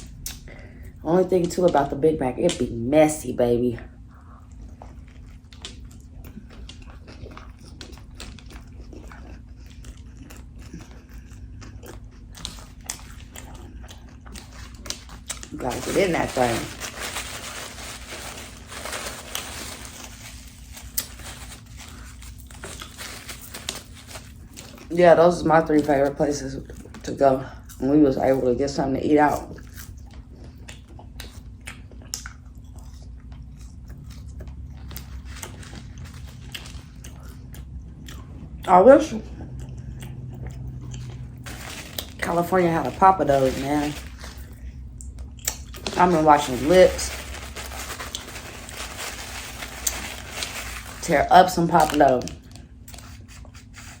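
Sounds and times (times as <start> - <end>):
low steady hum: 0.0 - 54.0
person chewing food: 4.1 - 15.6, 16.8 - 24.9, 29.6 - 38.7, 39.4 - 42.2, 43.9 - 45.9.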